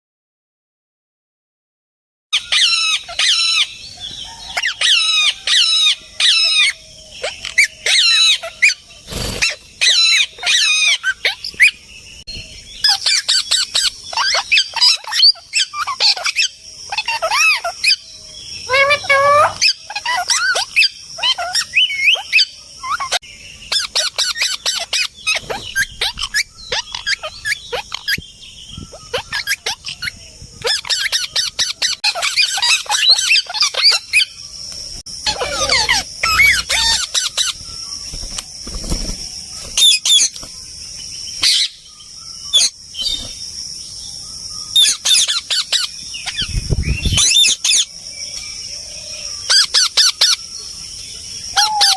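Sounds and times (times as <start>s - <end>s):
parrots squawking: 2.4s - 11.7s, 12.8s - 18.0s, 18.6s - 28.2s, 28.9s - 34.3s, 35.2s - 37.6s, 51.5s - 51.9s.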